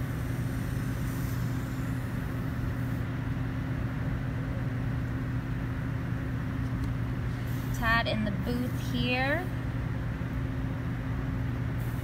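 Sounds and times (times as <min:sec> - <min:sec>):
broad hiss: 0:00.0 - 0:03.0, 0:07.3 - 0:07.8
shop machinery drone: 0:00.0 - 0:12.0.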